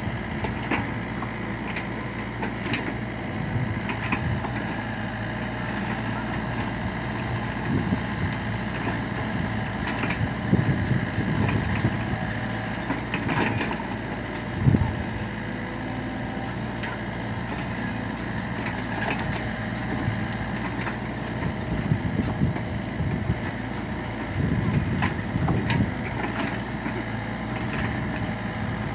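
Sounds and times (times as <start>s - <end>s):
excavator diesel engine running: 0.0s - 28.9s.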